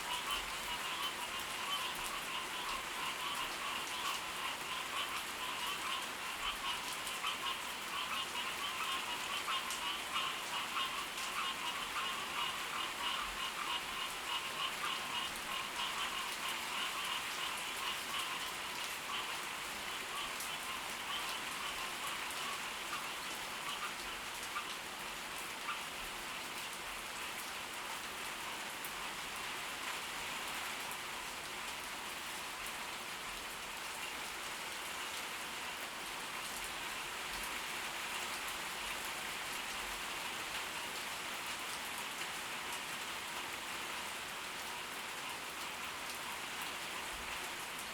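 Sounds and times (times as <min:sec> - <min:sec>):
frog chorus croaking: 0:00.0 - 0:24.7
heavy rain falling: 0:00.0 - 0:47.9.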